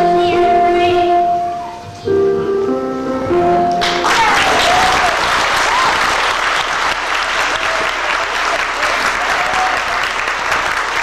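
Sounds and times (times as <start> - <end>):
audience clapping: 3.8 - 11.0.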